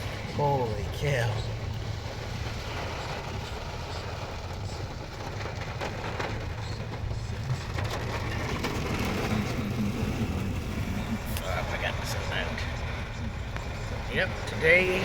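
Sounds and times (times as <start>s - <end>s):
engine and road hum: 0.0s - 15.0s.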